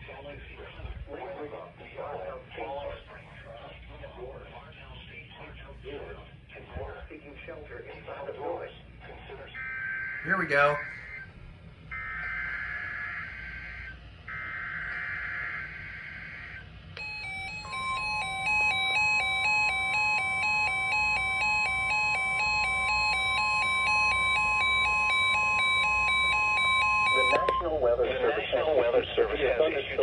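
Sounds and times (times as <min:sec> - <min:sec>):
steady warning alarm tone: 0:08.1 - 0:29.8
alternating electronic alarm beep: 0:09.4 - 0:27.8.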